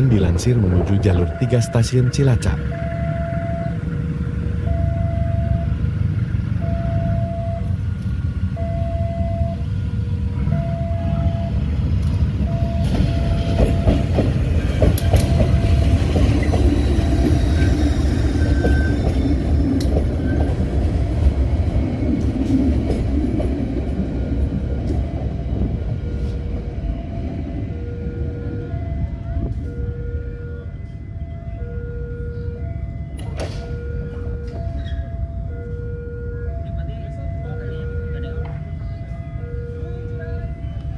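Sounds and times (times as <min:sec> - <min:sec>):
two-tone electronic warning beeps: 0:00.0 - 0:03.9, 0:04.6 - 0:05.8, 0:06.6 - 0:07.8, 0:08.6 - 0:09.7, 0:10.4 - 0:11.8, 0:12.4 - 0:19.2, 0:24.8 - 0:40.9
diesel locomotive rumbling: 0:00.0 - 0:40.9
wheels clicking over rail joints: 0:11.9 - 0:26.8
wheels squealing: 0:12.6 - 0:20.8, 0:34.6 - 0:35.3.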